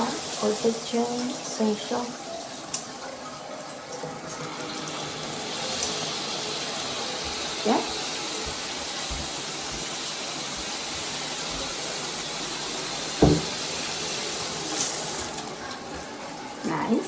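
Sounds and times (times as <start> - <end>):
shower water spraying: 0.0 - 17.0.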